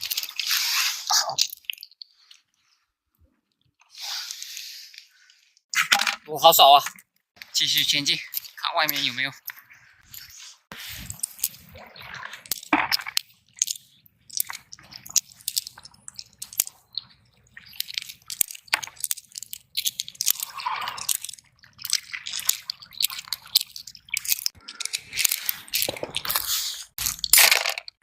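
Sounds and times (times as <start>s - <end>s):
footsteps crunching on wet shells: 6.9s - 28.0s.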